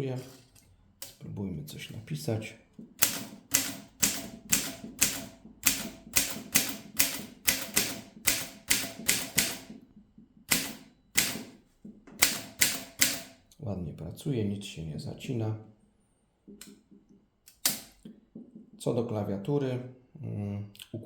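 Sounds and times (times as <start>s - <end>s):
manual typewriter keys striking: 3.0s - 9.8s, 10.5s - 11.6s, 12.2s - 13.4s.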